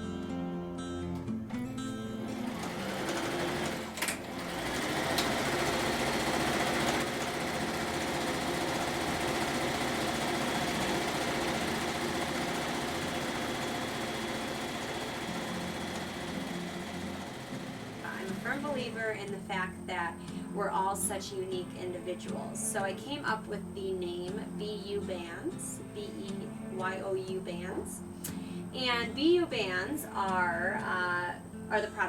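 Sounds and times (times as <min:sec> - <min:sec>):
guitar music: 0:00.0 - 0:32.0
sewing machine stitching: 0:02.3 - 0:19.1.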